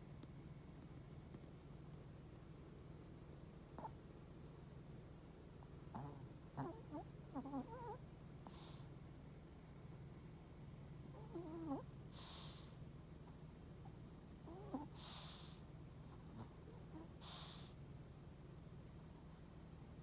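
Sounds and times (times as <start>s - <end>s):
pet snoring squeakily: 3.8s - 4.0s, 5.9s - 8.8s, 11.1s - 12.7s, 14.4s - 15.6s
breathy hissing breaths: 8.5s - 8.9s, 12.1s - 12.8s, 14.9s - 15.7s, 17.2s - 17.8s.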